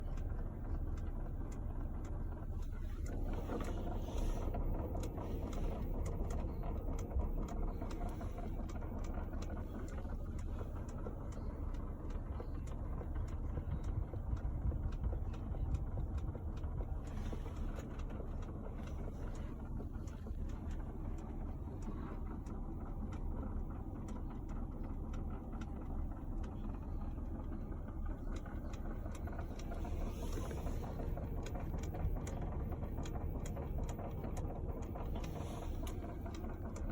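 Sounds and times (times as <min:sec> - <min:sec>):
low rumble of moving van: 0:00.0 - 0:36.9.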